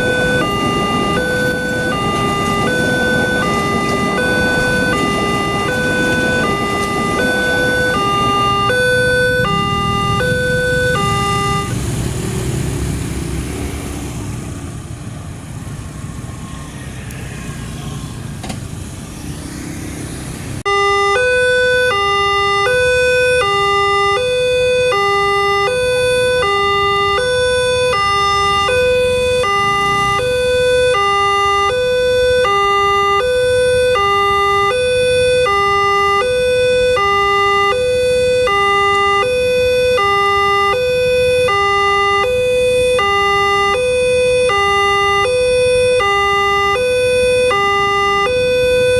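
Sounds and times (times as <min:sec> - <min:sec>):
level crossing two-tone siren: 0:00.0 - 0:11.9, 0:20.6 - 0:48.9
train low rumble: 0:00.0 - 0:13.4.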